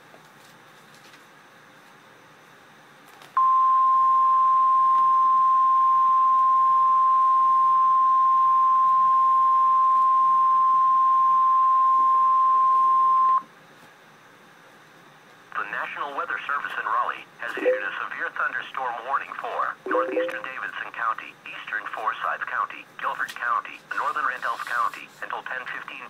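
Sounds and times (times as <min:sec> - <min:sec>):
steady alert beep: 0:17.6 - 0:18.0, 0:19.9 - 0:20.5.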